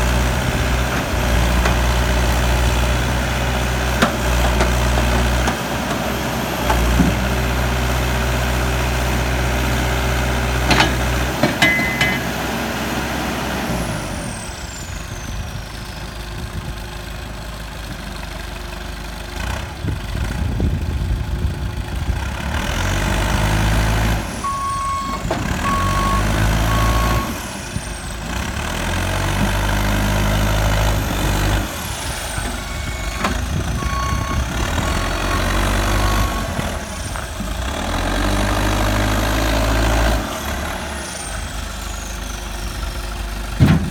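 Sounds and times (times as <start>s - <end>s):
diesel engine revving: 0.0s - 16.8s, 19.1s - 43.9s
reversing alarm beeping: 10.7s - 12.5s, 24.4s - 27.4s, 32.4s - 36.6s.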